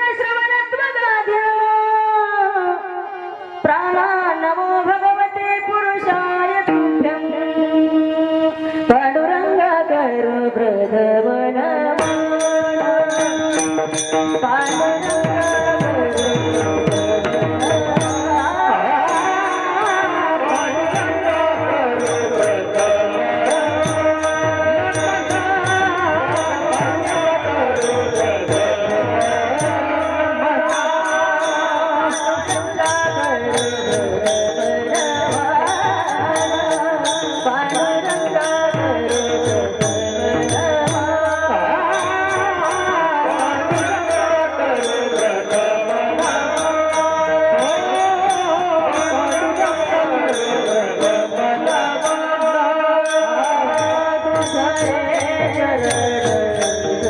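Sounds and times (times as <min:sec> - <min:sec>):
hand cymbals striking: 0:12.0 - 0:57.0.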